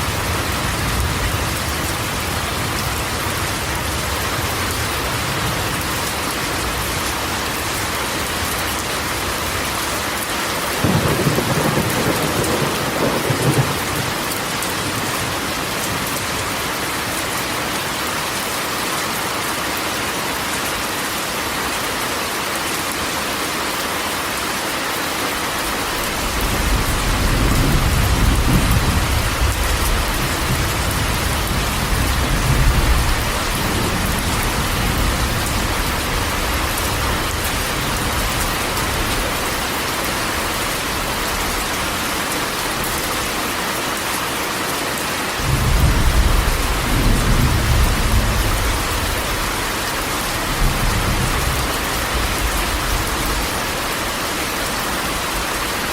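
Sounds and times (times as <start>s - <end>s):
rain on a metal roof: 0.0s - 55.9s
low thunder rolls: 10.8s - 15.4s, 26.3s - 38.2s, 45.4s - 49.4s.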